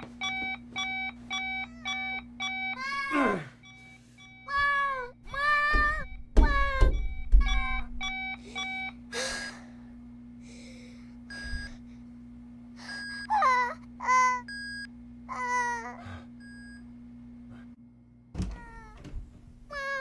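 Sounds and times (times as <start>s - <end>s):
cartoon cat whimpering: 2.7s - 3.4s, 4.5s - 6.8s, 13.3s - 14.5s, 15.3s - 16.0s, 18.6s - 19.0s, 19.7s - 20.0s.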